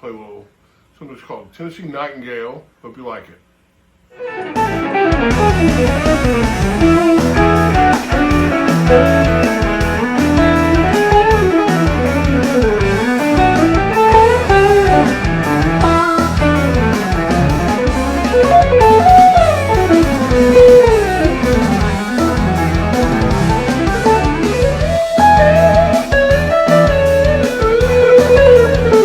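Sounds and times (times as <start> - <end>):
electric guitar melody: 4.2 - 29.0
low bass line: 4.6 - 29.0.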